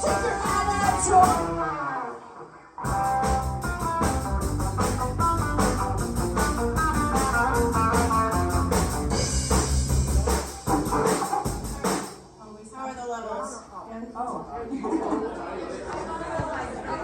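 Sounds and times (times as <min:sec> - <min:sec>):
drums: 0:00.0 - 0:01.8, 0:02.8 - 0:12.5
bass guitar: 0:00.0 - 0:01.9, 0:02.8 - 0:12.1.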